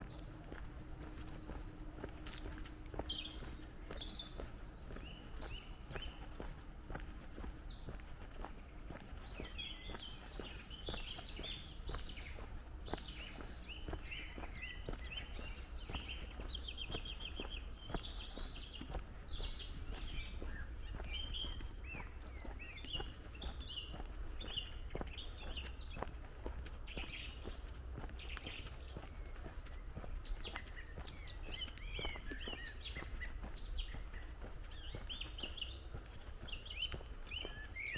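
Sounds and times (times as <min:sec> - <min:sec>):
footsteps on gravel: 0:00.0 - 0:37.9
songbirds chirping and singing: 0:00.0 - 0:37.9
steady low rumble: 0:00.0 - 0:37.9.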